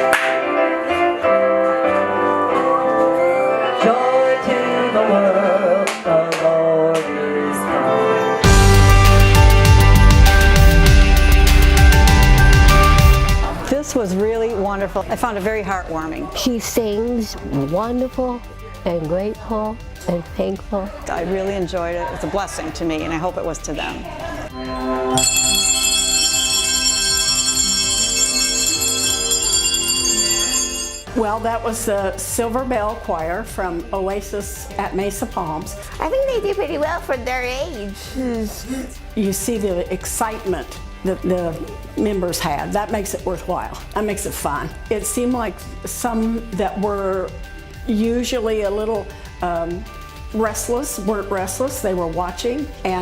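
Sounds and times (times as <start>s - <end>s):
handbell choir playing: 25.1s - 31.1s
sustained instrumental tones: 25.2s - 31.1s.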